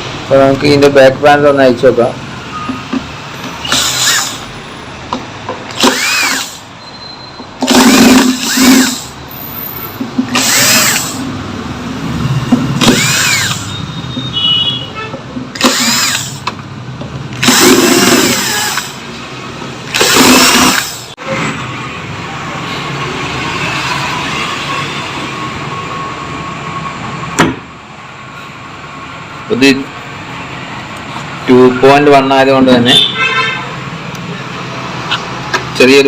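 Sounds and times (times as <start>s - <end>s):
electric screwdriver whining: 3.6s - 4.4s, 5.7s - 6.7s, 7.6s - 9.2s, 10.3s - 11.3s, 12.8s - 13.7s, 15.5s - 16.6s, 17.4s - 19.0s, 19.9s - 21.1s.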